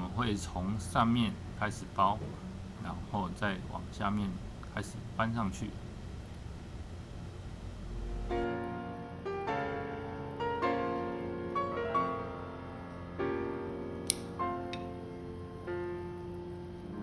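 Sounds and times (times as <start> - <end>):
low hum: 0.0 - 8.5
piano music: 7.9 - 17.0.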